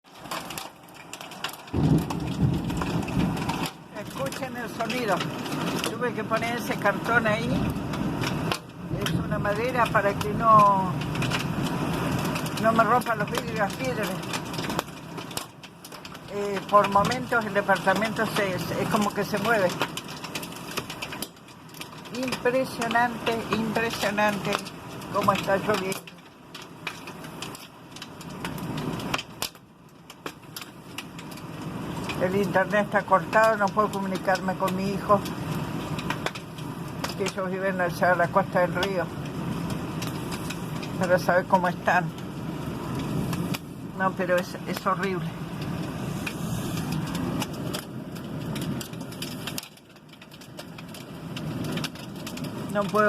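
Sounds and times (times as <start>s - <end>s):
heavy rain hissing: 0.1s - 21.3s, 31.4s - 49.7s
raindrops tapping on board: 0.1s - 53.0s
wind battering building: 0.8s - 15.2s, 39.0s - 49.6s.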